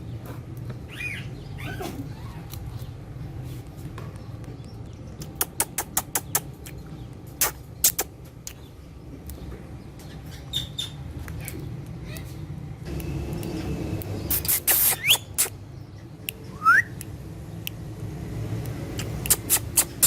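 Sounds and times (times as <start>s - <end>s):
parrot chirping: 0.9s - 2.3s, 10.1s - 12.2s, 14.2s - 15.6s, 18.9s - 20.0s
parrot clicking: 5.2s - 6.8s, 18.5s - 20.0s.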